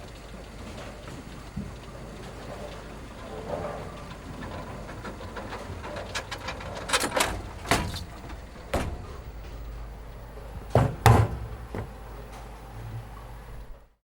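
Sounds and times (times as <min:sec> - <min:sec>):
steady low rumble: 0:04.0 - 0:13.8
sharp knocks: 0:10.6 - 0:12.0.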